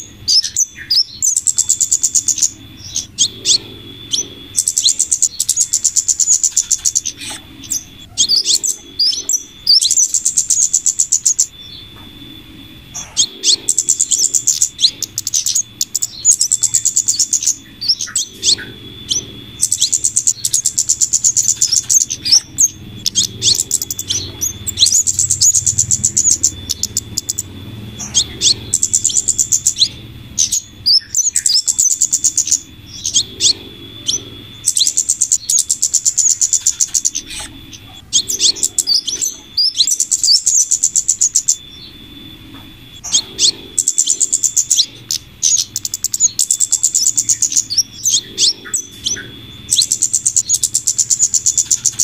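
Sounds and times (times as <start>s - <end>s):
high chattering bird trills: 0.0s - 52.0s
sharp bird chips: 0.0s - 52.0s.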